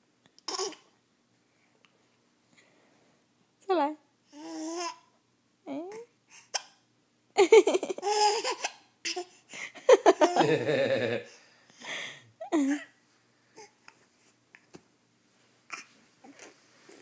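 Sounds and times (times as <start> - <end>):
baby laughing: 0.5 - 0.9, 7.6 - 9.3, 9.9 - 11.3.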